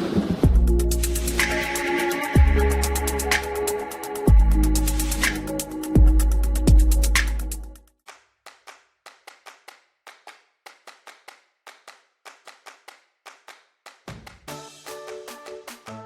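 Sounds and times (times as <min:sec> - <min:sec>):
electronic music: 0:00.4 - 0:07.8, 0:14.5 - 0:16.0
clap-like percussion clicks: 0:08.1 - 0:16.0.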